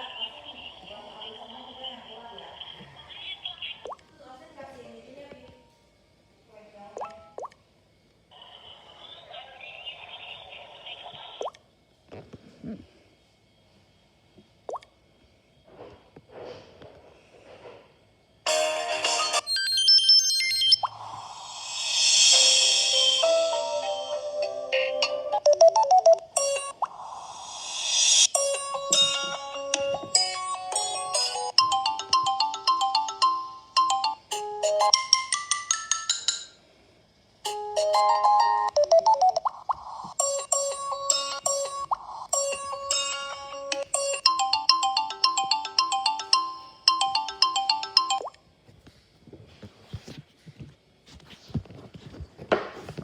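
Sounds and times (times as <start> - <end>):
faint soft noises: 8.3 - 14.6
mobile phone ringtone melody: 18.5 - 26.8, 27.9 - 36.4, 37.7 - 48.3.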